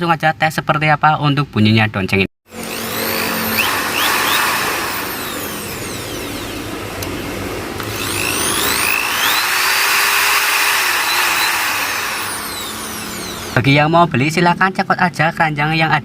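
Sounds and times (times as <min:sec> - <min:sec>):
electric drill motor whine: 0:02.5 - 0:13.8.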